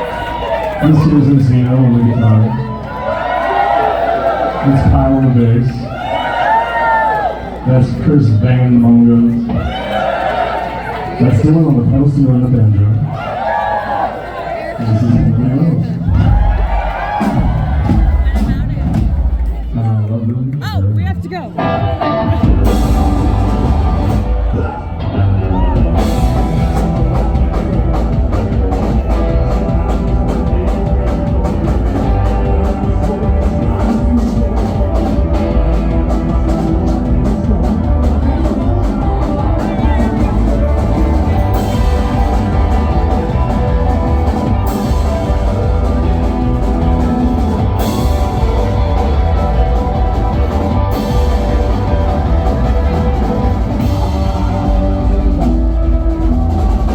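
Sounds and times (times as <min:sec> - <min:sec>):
rock band playing: 0:00.0 - 0:56.9
drum kit beat: 0:15.0 - 0:19.8, 0:20.7 - 0:56.9.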